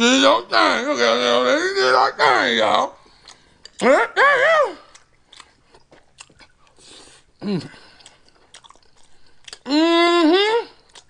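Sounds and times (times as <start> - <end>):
wet chewing: 3.1 - 3.8, 4.8 - 9.7, 10.8 - 11.0
person humming mmm: 7.4 - 7.9, 9.6 - 11.0.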